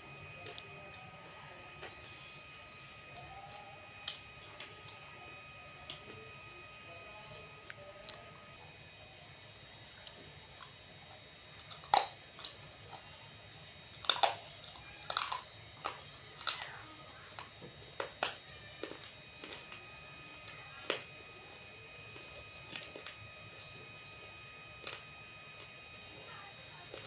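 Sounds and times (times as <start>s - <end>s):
clay being chewed with crunches: 3.1s - 6.4s, 9.7s - 13.2s, 13.8s - 27.0s.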